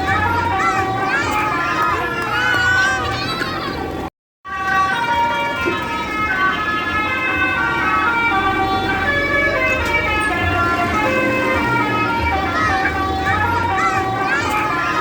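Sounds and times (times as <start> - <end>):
bus horn playing a tune: 4.5 - 15.0.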